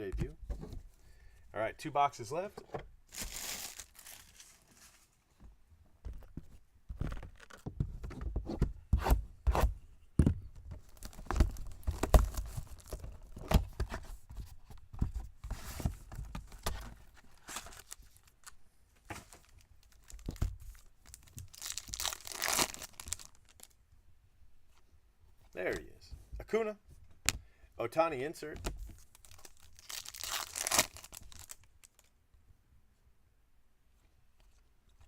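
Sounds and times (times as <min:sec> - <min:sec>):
wrappers tearing and crinkling: 0:03.1 - 0:04.9, 0:19.3 - 0:23.7, 0:29.0 - 0:32.1.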